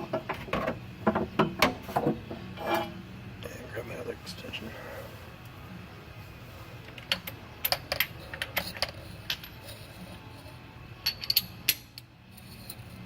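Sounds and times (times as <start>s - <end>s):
metal tools clinking: 7.1s - 11.8s, 12.4s - 13.0s.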